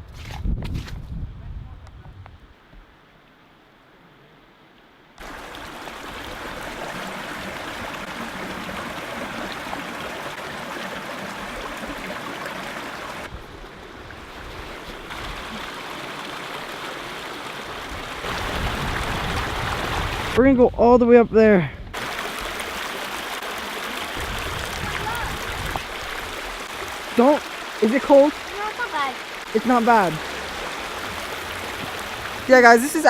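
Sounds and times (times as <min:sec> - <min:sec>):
stream water rushing: 0:05.0 - 0:20.4, 0:22.0 - 0:33.0.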